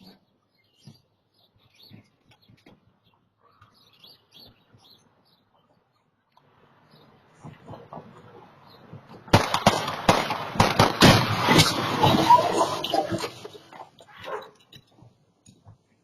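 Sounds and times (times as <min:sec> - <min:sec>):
small birds chirping: 0:00.0 - 0:09.3.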